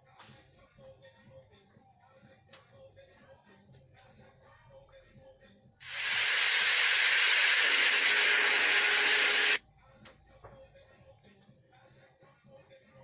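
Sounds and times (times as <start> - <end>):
loud steady hiss: 5.8 - 9.6.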